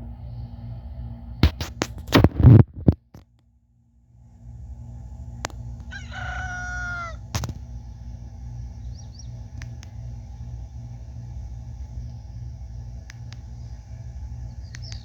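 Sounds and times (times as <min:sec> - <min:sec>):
steady low rumble: 0:00.0 - 0:15.0
rooster crowing: 0:05.8 - 0:07.3
sharp clicks: 0:09.5 - 0:10.0, 0:13.0 - 0:13.5, 0:14.6 - 0:15.0.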